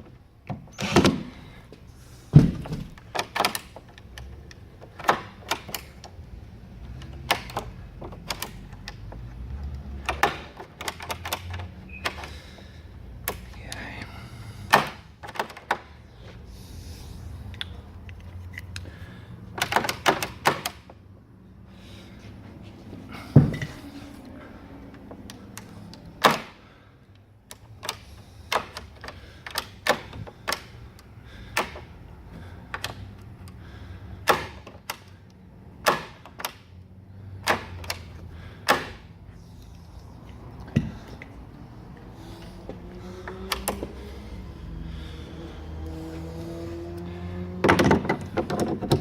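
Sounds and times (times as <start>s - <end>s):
heavy latch thunk: 0.5s - 1.4s
latch metal clicks: 2.6s - 6.2s, 6.9s - 12.3s, 13.2s - 13.6s, 14.7s - 15.9s, 19.5s - 21.0s, 25.0s - 26.6s, 27.4s - 32.0s, 37.4s - 39.1s, 43.2s - 44.3s.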